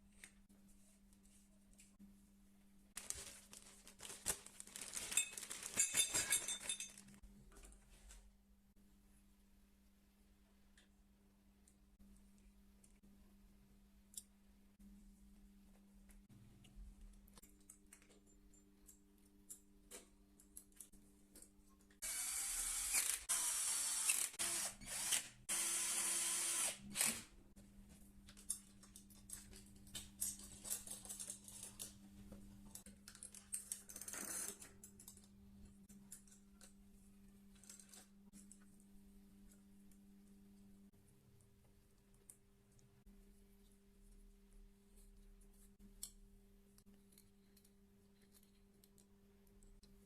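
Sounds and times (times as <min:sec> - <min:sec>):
power tool running: 0:22.0 - 0:27.2.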